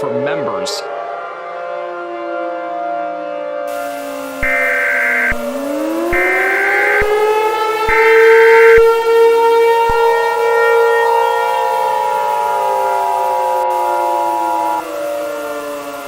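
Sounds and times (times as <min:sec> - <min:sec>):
siren wail: 0:00.0 - 0:16.0
harsh digital data tones: 0:04.3 - 0:09.3, 0:09.9 - 0:10.5, 0:12.1 - 0:15.1.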